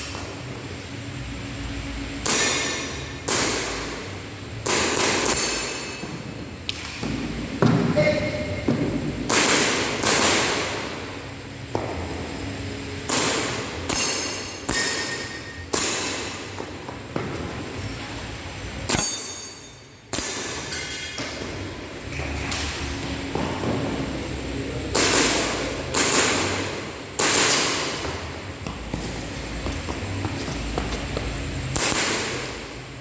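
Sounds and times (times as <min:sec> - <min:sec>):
short metallic ring: 0:05.2 - 0:06.1, 0:13.9 - 0:15.9, 0:18.9 - 0:21.2
airsoft gun shots: 0:27.2 - 0:27.9.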